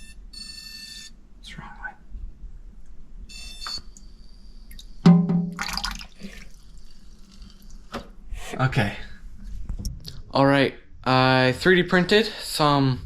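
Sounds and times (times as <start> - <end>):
water splashing and dripping: 5.5 - 8.2.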